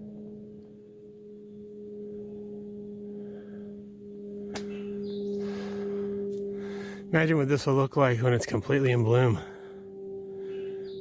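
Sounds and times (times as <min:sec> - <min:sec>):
steady low hum: 0:00.0 - 0:11.0
sharp click: 0:04.5 - 0:04.8.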